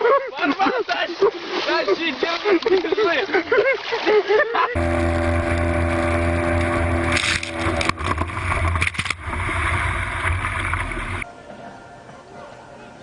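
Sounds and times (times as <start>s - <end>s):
boat engine running: 4.8s - 11.2s.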